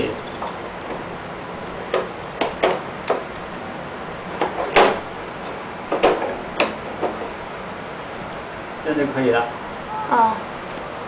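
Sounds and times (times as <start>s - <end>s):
sharp clicks and knocks: 1.9s - 3.3s, 4.3s - 7.4s.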